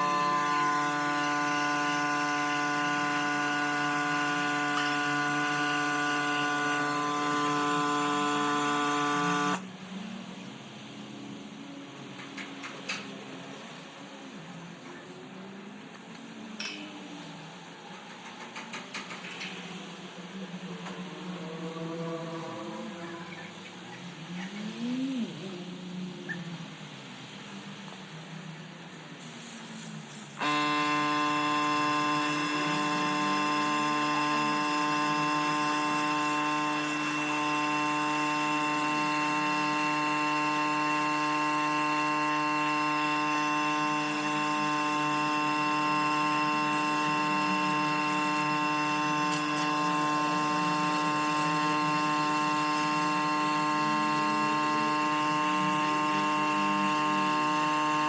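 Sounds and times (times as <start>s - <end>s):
power tool motor whining: 0.0s - 9.6s, 29.2s - 58.0s.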